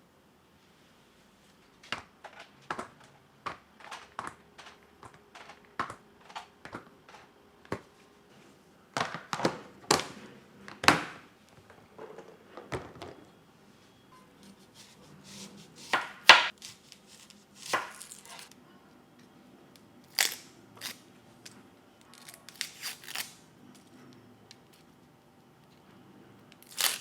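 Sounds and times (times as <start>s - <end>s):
kitchen items knocking and clicking: 1.8s - 7.9s, 8.9s - 13.3s.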